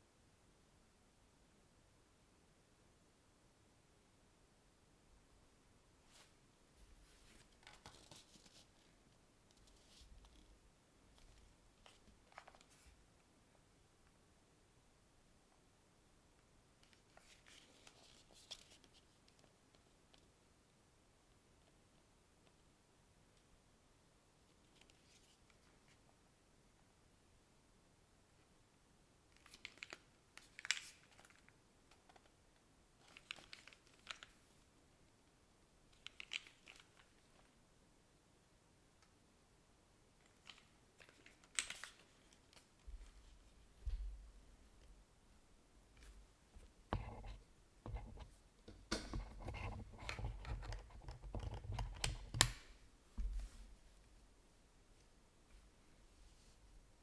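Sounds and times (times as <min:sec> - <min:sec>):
mechanical keyboard keystrokes: 0:48.9 - 0:52.7.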